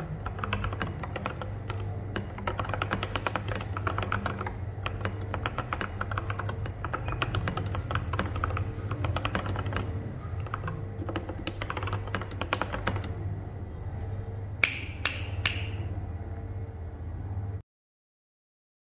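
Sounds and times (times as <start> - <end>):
mechanical keyboard typing: 0.0 - 13.2
low hum: 7.7 - 17.6.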